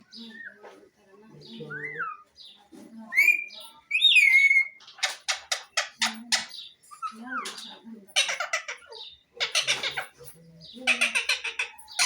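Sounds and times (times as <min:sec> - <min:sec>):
parrot squawking: 0:08.2 - 0:10.2, 0:10.8 - 0:12.0.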